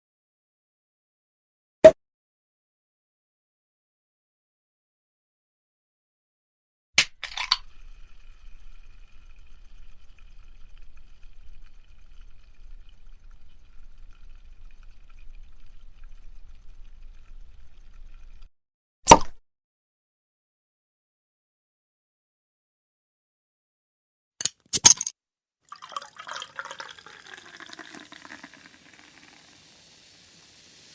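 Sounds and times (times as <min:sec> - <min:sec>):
bottle cap click and rattle: 0:07.0 - 0:07.6, 0:24.4 - 0:25.1
liquid pouring: 0:07.1 - 0:18.5, 0:25.7 - 0:30.9.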